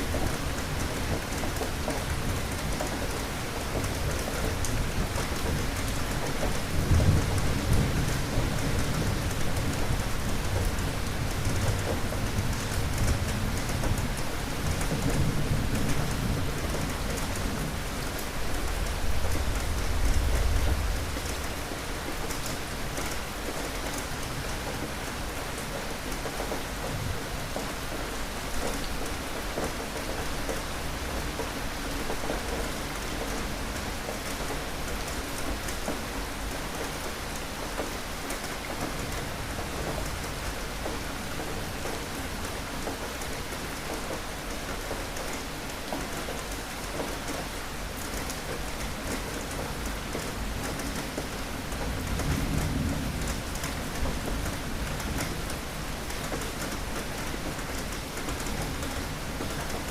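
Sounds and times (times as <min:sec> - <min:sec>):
heavy rain falling: 0:00.0 - 0:59.9
low rumble of thunder: 0:06.4 - 0:21.5, 0:51.8 - 0:56.1.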